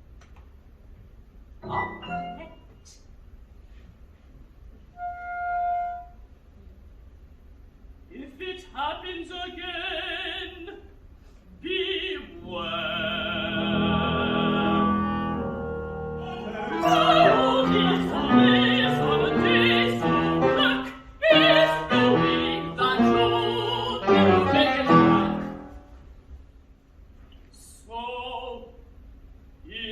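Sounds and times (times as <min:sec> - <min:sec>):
contralto singing opera: 0:11.6 - 0:25.9
orchestral accompaniment: 0:13.7 - 0:25.9.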